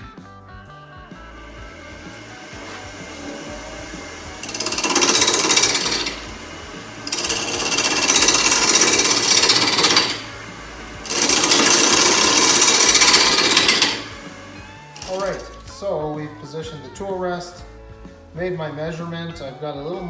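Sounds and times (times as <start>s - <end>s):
power tool buzzing: 1.1s - 15.8s.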